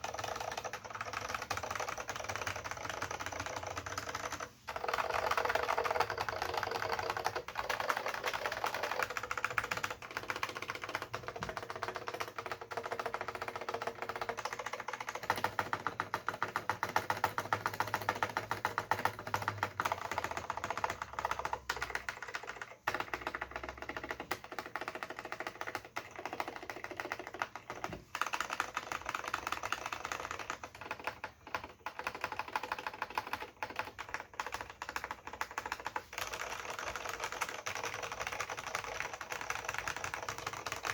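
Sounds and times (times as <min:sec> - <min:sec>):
fast typing on keyboard: 0:00.0 - 0:40.9.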